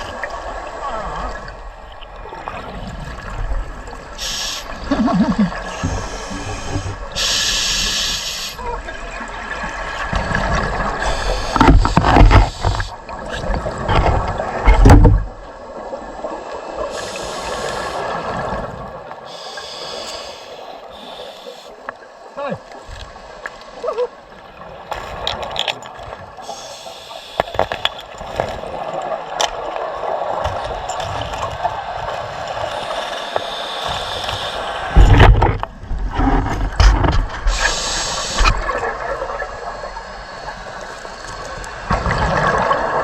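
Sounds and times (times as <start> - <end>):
gurgling exhaled bubbles: 0.0 - 21.6, 26.4 - 43.0
regulator breath hiss: 4.2 - 4.9, 5.5 - 8.6, 11.0 - 13.0, 16.8 - 18.3, 19.2 - 21.8, 26.4 - 28.0, 32.5 - 35.2, 37.4 - 38.6.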